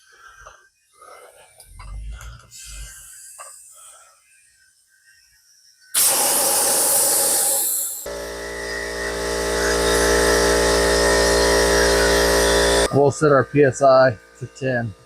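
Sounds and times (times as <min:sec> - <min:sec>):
compressed air hissing into tire: 0:06.0 - 0:08.1
air compressor motor humming: 0:06.0 - 0:15.0.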